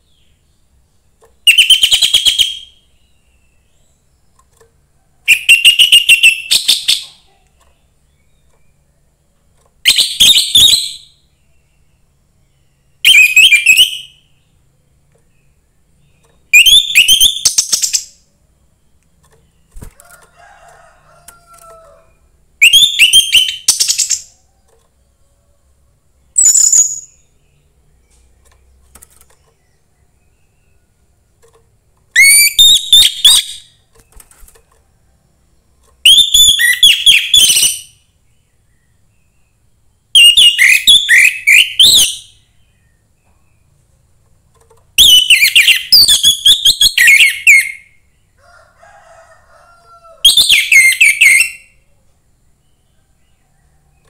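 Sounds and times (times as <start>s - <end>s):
thrush singing whistled phrases: 1.5s - 2.8s, 5.3s - 7.0s, 9.8s - 11.1s, 13.0s - 14.3s, 16.5s - 18.1s, 22.6s - 24.3s, 32.2s - 33.7s, 36.0s - 38.0s, 40.2s - 42.4s, 45.0s - 47.9s, 50.2s - 51.7s.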